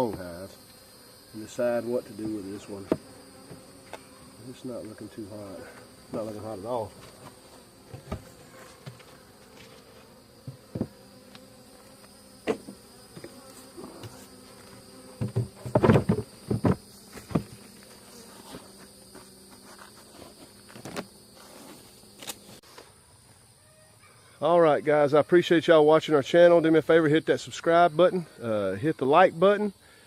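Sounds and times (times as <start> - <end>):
bees buzzing: 0.0 - 22.6
sharp knocks and clatters: 15.2 - 17.6.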